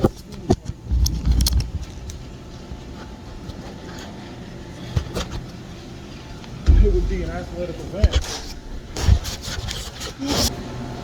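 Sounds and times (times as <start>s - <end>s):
low machinery hum: 0.0s - 11.0s
knocks and clicks: 6.7s - 9.3s
low rumbling bump: 6.7s - 9.4s.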